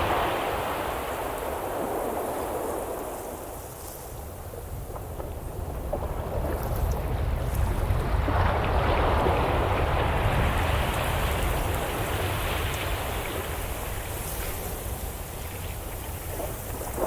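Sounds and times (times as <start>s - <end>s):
rushing water: 7.1s - 17.0s.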